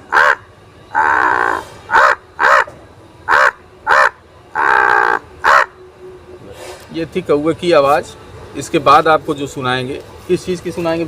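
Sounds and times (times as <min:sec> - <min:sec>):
man imitating crow caws: 0:00.1 - 0:02.7, 0:03.3 - 0:05.7.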